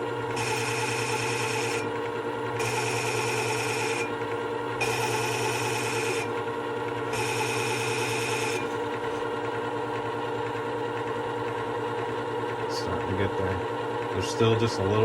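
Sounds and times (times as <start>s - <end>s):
sharpener motor humming: 0.0s - 9.6s
chisel grinding with high hiss: 0.4s - 1.9s, 2.6s - 4.1s, 4.8s - 6.3s, 7.1s - 8.7s.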